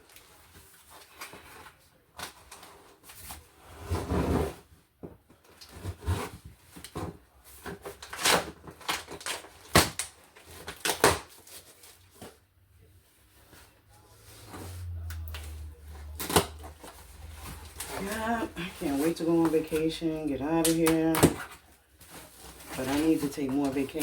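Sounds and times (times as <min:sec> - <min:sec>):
cardboard scraping and tearing: 0:00.6 - 0:04.7, 0:05.6 - 0:12.4, 0:16.0 - 0:24.0.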